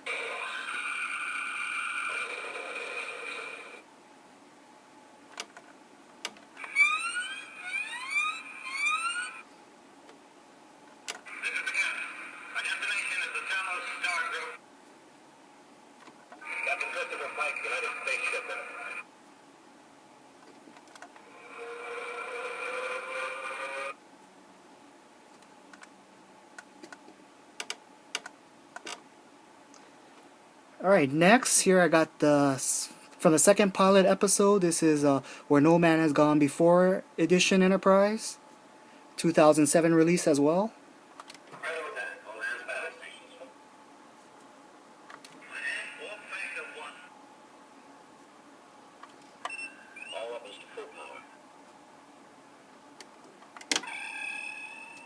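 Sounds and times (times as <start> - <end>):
toy speaker siren-like tone: 0.1 - 3.8, 6.6 - 9.4, 21.4 - 24.0, 53.8 - 55.0.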